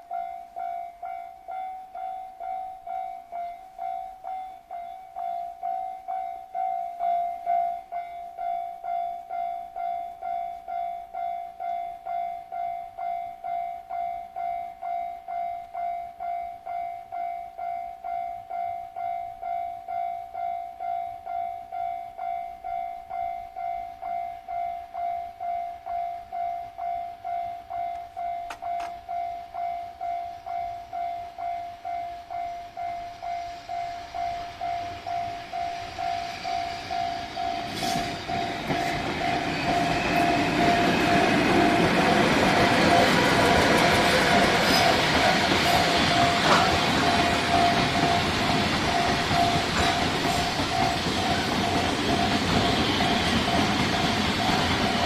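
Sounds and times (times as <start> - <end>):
level crossing warning bell: 0.0 - 55.0
approaching train rumble: 30.4 - 55.0.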